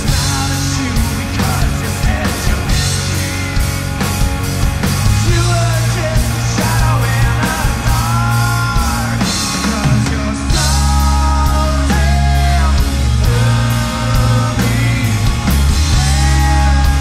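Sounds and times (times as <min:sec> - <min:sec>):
rock band playing live: 0:00.0 - 0:17.0.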